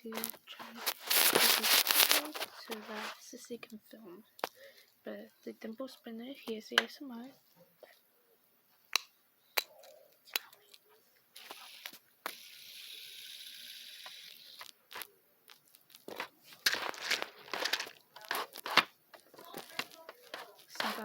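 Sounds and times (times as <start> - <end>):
handling rustles: 0.0 - 3.5, 14.6 - 21.0
fidget spinner whirring: 0.1 - 3.2, 11.4 - 15.1
fidget toy clicks: 11.4 - 14.6.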